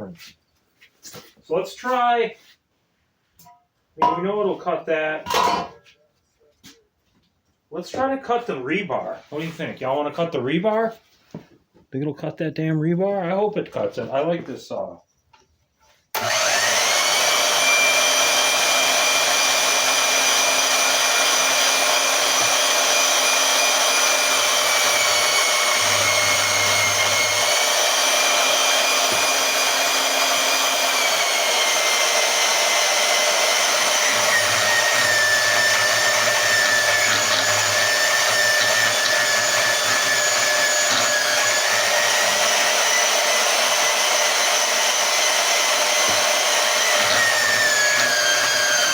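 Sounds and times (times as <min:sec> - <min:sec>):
band saw cutting metal: 0:16.2 - 0:48.9.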